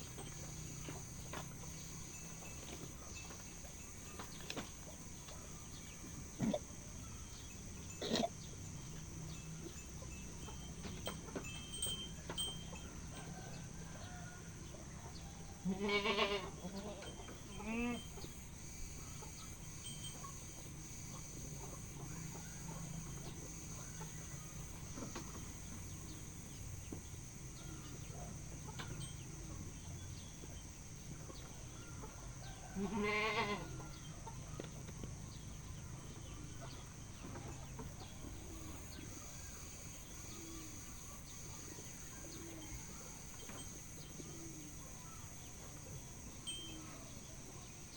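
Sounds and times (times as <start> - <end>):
goat bleating: 15.6 - 18.2, 32.8 - 33.8.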